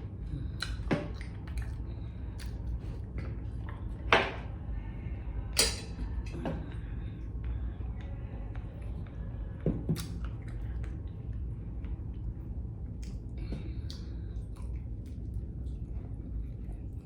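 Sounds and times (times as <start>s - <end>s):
low background hum: 0.0s - 17.0s.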